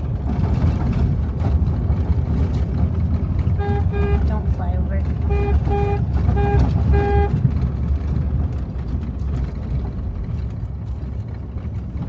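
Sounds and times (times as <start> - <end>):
vehicle driving on gravel: 0.0 - 12.0
car horn toots: 3.6 - 4.5, 5.2 - 7.5.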